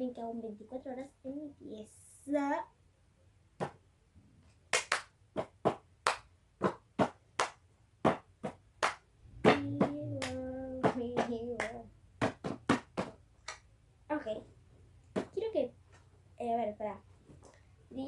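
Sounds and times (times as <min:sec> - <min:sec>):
sharp hand claps: 0:04.7 - 0:13.7
child humming a note: 0:09.5 - 0:11.2.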